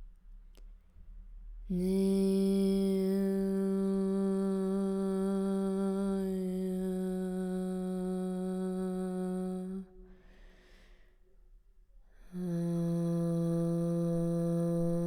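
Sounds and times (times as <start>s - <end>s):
soft in-breath: 10.0s - 11.4s.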